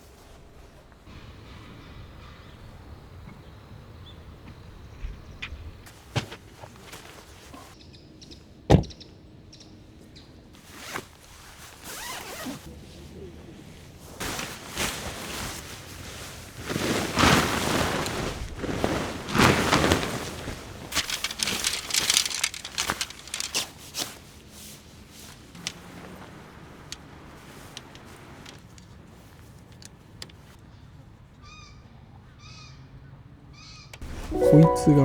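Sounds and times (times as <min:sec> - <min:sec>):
tent zipper being pulled: 0:10.6 - 0:12.7, 0:14.2 - 0:24.2
nylon fabric rustling: 0:10.6 - 0:12.8, 0:13.8 - 0:29.8.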